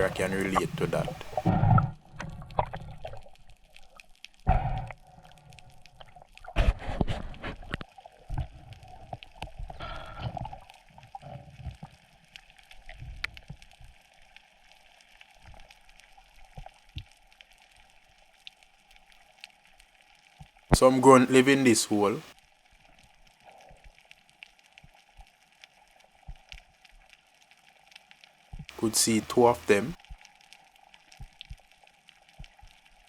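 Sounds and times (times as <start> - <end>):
water gurgling and sloshing: 0.0 - 14.0.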